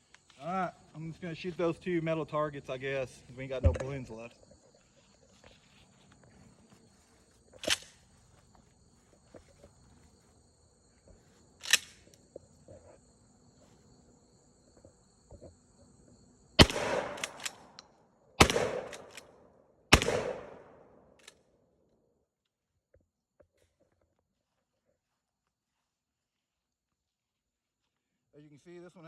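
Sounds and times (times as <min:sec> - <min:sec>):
high insect trill: 0:00.0 - 0:18.3
shotgun action clacks: 0:16.6 - 0:17.8, 0:18.4 - 0:19.3
shotgun shots echoing: 0:16.6 - 0:17.8, 0:18.4 - 0:19.3, 0:19.9 - 0:21.0.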